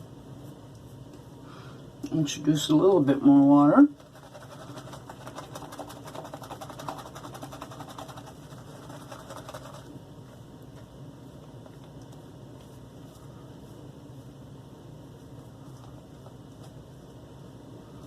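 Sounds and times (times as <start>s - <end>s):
shaving brush swishing soap: 3.9s - 9.9s.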